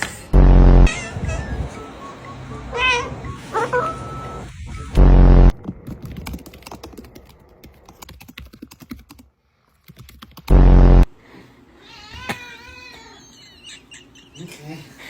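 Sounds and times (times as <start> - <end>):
loud low buzz: 0.3 - 1.8, 4.3 - 5.8, 10.5 - 11.2
keyboard keys clicking: 5.6 - 10.5.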